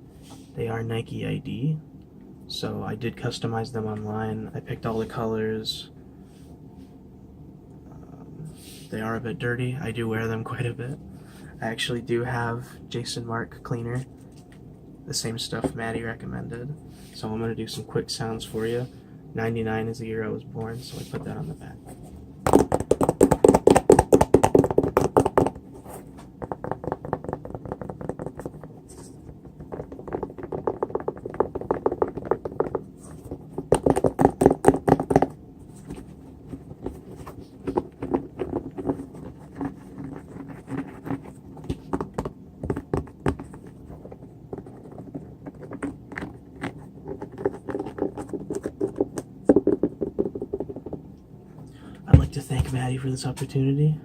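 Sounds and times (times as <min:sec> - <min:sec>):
fingers tapping on a sneaker: 0:22.5 - 0:25.6, 0:26.4 - 0:28.6, 0:29.6 - 0:35.3, 0:39.6 - 0:43.6, 0:44.5 - 0:51.0
scratching on a sneaker: 0:22.6 - 0:50.9.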